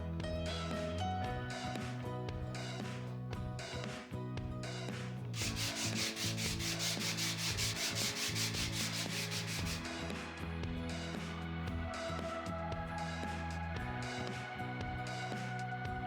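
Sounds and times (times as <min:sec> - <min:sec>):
background music: 0:00.0 - 0:16.0
sandpaper rubbing on wood: 0:05.4 - 0:09.9.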